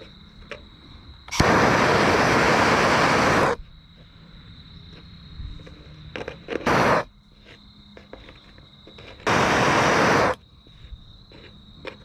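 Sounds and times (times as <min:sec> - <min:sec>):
propane torch flame hissing: 0:01.3 - 0:03.6, 0:06.6 - 0:07.1, 0:09.2 - 0:10.4.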